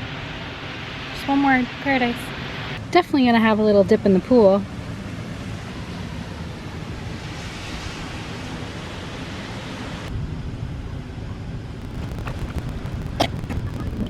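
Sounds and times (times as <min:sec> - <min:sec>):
wind rumbling on microphone: 0:10.0 - 0:14.0.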